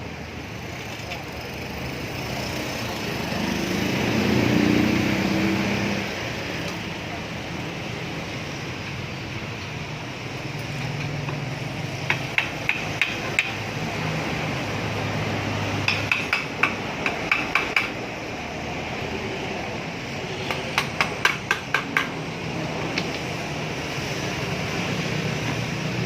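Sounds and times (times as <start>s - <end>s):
hammer tapping on metal: 12.0s - 13.6s, 15.8s - 18.0s, 20.4s - 22.2s.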